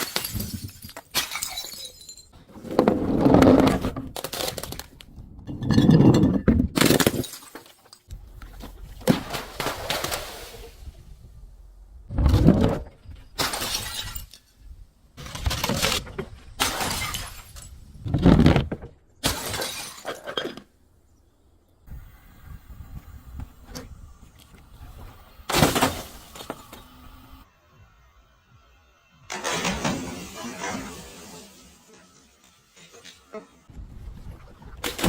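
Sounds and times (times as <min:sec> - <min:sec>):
glass bottles shattering: 0:00.0 - 0:02.4, 0:05.5 - 0:08.1, 0:13.4 - 0:14.5, 0:16.6 - 0:17.8, 0:19.2 - 0:20.6.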